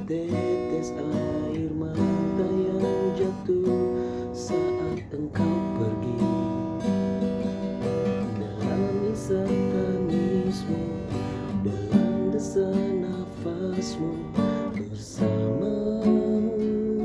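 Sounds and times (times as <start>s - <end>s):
acoustic guitar strumming: 0.0s - 17.0s.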